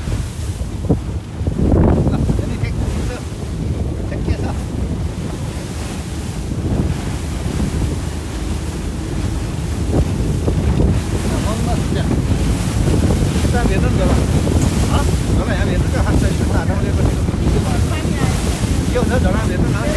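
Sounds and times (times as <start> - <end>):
rushing water: 0.0 - 19.9
wind buffeting microphone: 0.0 - 19.9.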